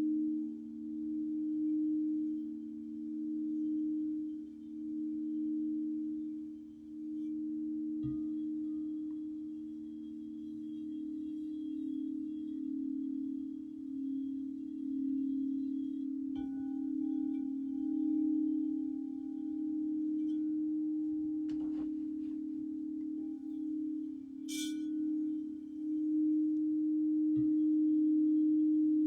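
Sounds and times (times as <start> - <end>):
singing bowl low tone: 0.0 - 29.0
bright tinkle: 15.0 - 26.3
higher ringing tone: 16.9 - 27.1.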